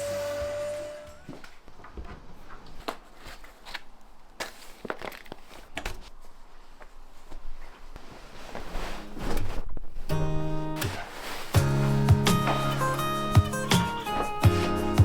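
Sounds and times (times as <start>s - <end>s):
household items knocking and rustling: 10.9s - 15.0s.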